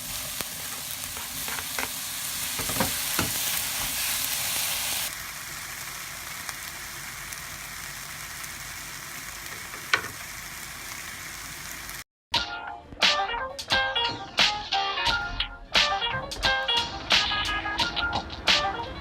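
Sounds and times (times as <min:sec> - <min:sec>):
food frying sizzle: 0:00.0 - 0:12.1.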